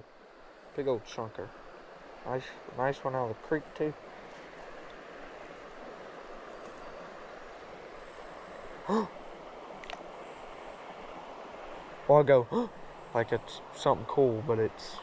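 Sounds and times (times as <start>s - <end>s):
creek water flowing: 0.0s - 15.0s
person's brief voiced sound: 8.8s - 9.2s.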